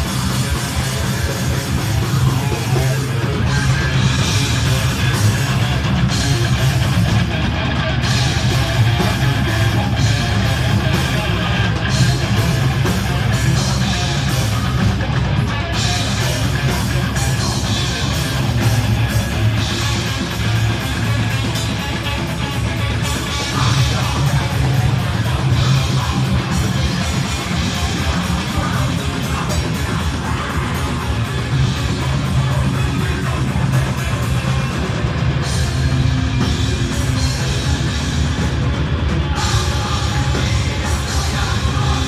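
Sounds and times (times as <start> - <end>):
heavy metal band playing live: 0.0 - 42.0.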